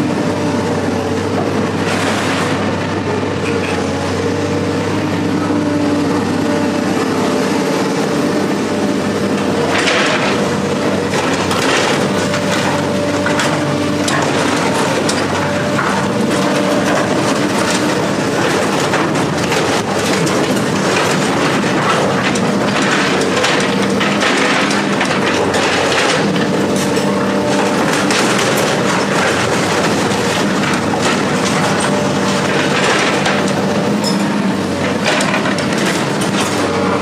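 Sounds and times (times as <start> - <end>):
heavy machine engine running: 0.0 - 37.0
metallic clanks and crunches: 0.5 - 37.0.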